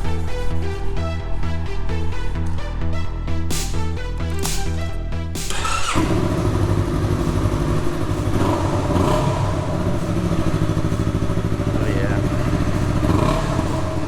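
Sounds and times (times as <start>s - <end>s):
electronic music: 0.0s - 14.0s
motorcycle engine running: 5.4s - 14.0s.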